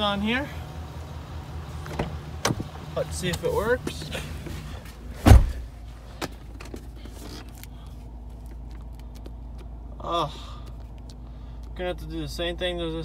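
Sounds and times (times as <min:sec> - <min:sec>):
truck engine idling: 0:00.0 - 0:13.0
heavy thump: 0:05.2 - 0:05.7.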